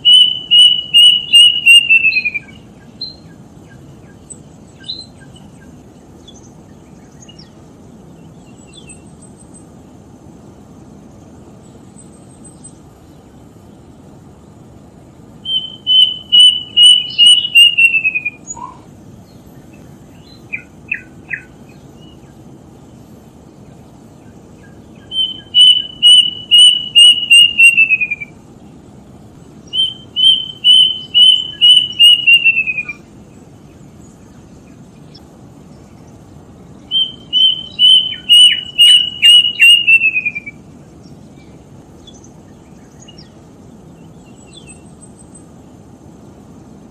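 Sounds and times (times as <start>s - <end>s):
bird calling in fast clipped notes: 0.0s - 7.6s, 15.4s - 18.9s, 24.2s - 28.4s, 29.6s - 33.1s, 36.8s - 41.0s.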